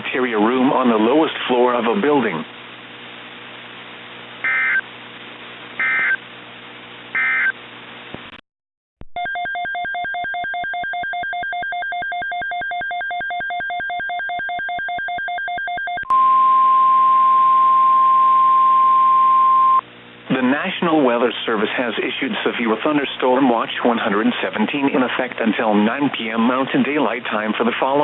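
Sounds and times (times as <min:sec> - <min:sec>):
data tone bursts: 0:04.4 - 0:04.8, 0:05.8 - 0:06.2, 0:07.2 - 0:07.6
rapid pulsed electronic beeping: 0:04.5 - 0:04.8, 0:05.8 - 0:06.2
steady alert tone: 0:05.8 - 0:06.2.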